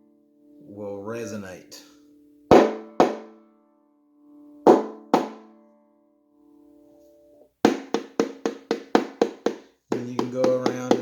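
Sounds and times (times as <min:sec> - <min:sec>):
taps on banjo head: 0:02.5 - 0:03.3, 0:04.7 - 0:05.4, 0:07.7 - 0:11.0
banjo strings ringing: 0:02.5 - 0:03.5, 0:04.7 - 0:05.8.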